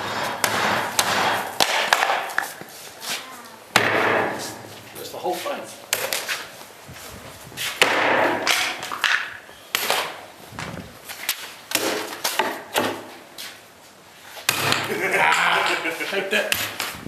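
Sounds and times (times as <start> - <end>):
knife chopping strikes: 0.0 - 2.6, 3.7 - 4.7, 11.7 - 13.1, 14.5 - 14.9.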